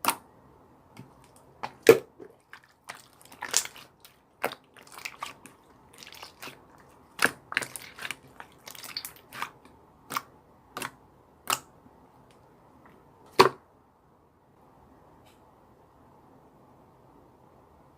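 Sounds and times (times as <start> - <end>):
slime squeezed by hand: 1.6 - 10.2.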